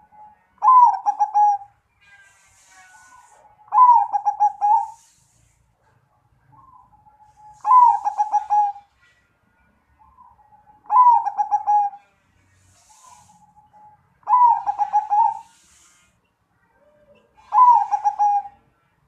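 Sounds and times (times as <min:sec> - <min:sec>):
dove cooing: 0:00.0 - 0:01.7, 0:03.7 - 0:05.1, 0:06.5 - 0:08.9, 0:10.1 - 0:12.0, 0:12.9 - 0:15.7, 0:16.8 - 0:18.6.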